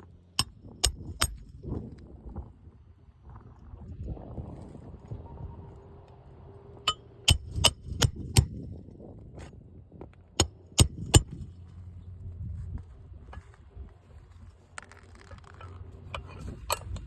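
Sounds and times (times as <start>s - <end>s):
hammer striking nails: 0.4s - 1.5s, 6.9s - 8.6s, 10.4s - 11.4s.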